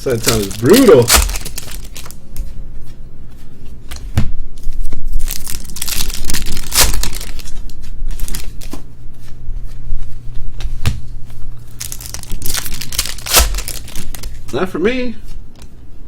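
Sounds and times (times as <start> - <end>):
card pack wrappers crinkling and tearing: 0.0 - 2.2, 5.1 - 8.7, 11.7 - 14.4.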